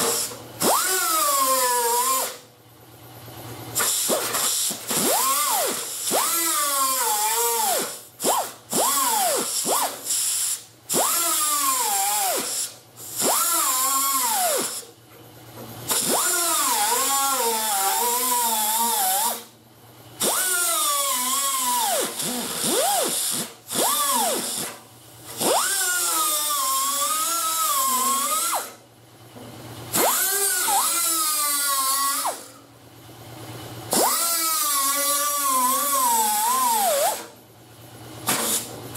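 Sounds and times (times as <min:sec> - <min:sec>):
power grinder cutting steel: 0:15.9 - 0:19.5, 0:25.4 - 0:28.7, 0:30.0 - 0:32.6, 0:33.9 - 0:37.3.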